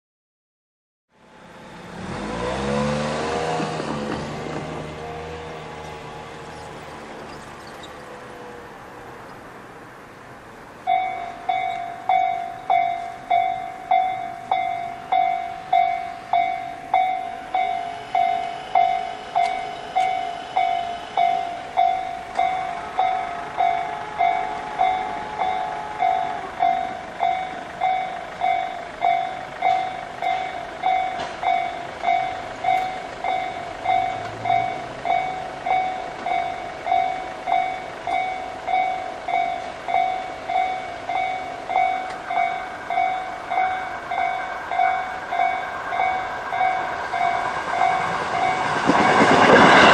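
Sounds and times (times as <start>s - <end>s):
level-crossing alarm chime: 10.9s - 49.9s.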